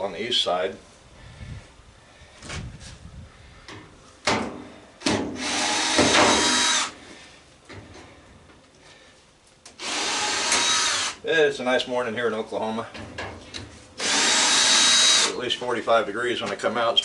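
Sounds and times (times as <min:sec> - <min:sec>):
power drill backing out screw: 0:05.1 - 0:06.9, 0:09.8 - 0:11.2, 0:14.0 - 0:15.4.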